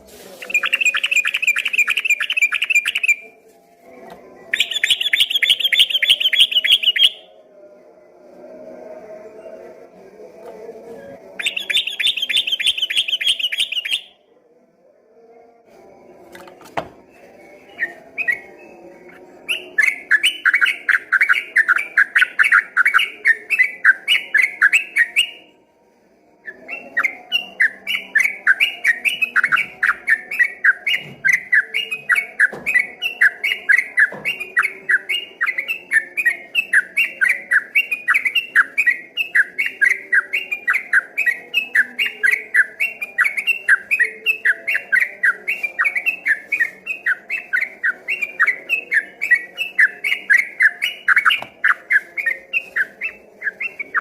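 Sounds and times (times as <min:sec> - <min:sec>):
bird singing whistled notes: 0:00.4 - 0:03.3, 0:04.5 - 0:07.3, 0:11.4 - 0:14.2, 0:17.1 - 0:25.5, 0:26.4 - 0:54.0.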